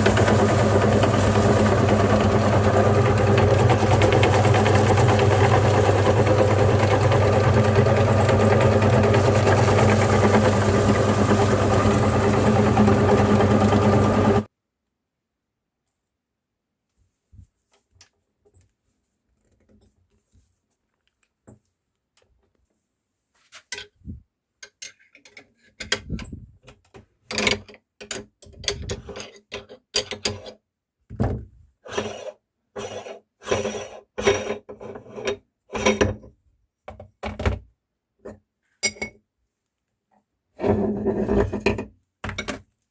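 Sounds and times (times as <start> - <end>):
meat grinder crushing toast: 0.0 - 14.5.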